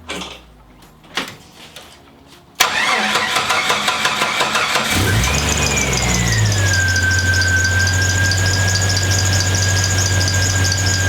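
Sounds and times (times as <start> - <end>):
starter motor cranking: 2.6 - 11.0
car engine idling: 3.6 - 11.0.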